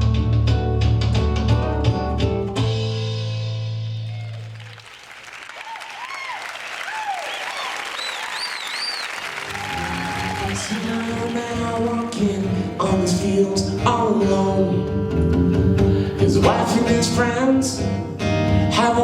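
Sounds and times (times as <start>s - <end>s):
live band with guitar and drums: 0.0s - 4.3s, 9.4s - 19.0s
audience clapping: 4.0s - 13.0s
whistles: 5.6s - 11.4s.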